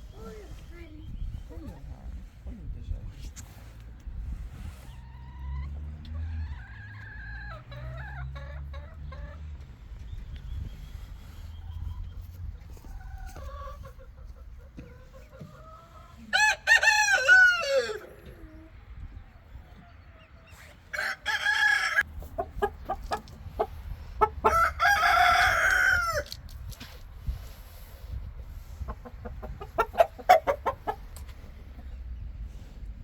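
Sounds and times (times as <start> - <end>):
hens clucking: 4.8 - 27.6, 28.4 - 32.9
rooster crowing: 16.4 - 18.0, 21.0 - 22.1, 24.5 - 26.3.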